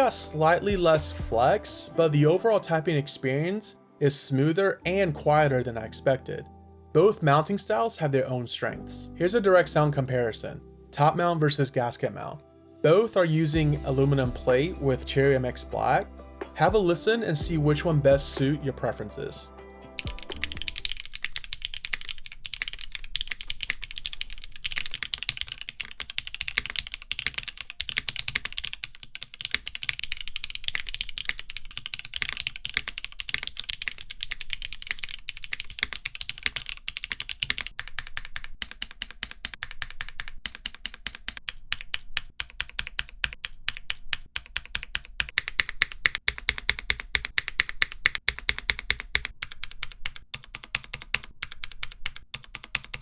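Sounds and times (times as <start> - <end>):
mechanical keyboard typing: 20.0 - 53.0.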